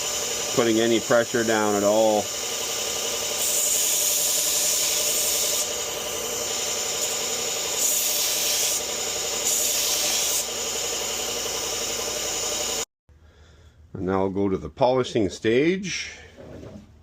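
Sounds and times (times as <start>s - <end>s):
blade grinding hiss: 0.0s - 12.8s
sharpening machine motor hum: 0.0s - 12.9s.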